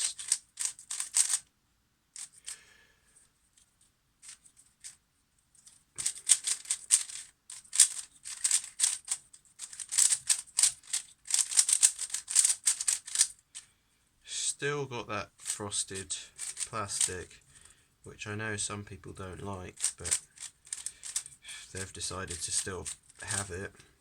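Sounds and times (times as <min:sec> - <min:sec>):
puzzle cube clicking as turned: 0:00.0 - 0:01.5, 0:06.0 - 0:13.4, 0:15.4 - 0:15.6, 0:16.4 - 0:17.2, 0:19.7 - 0:23.5.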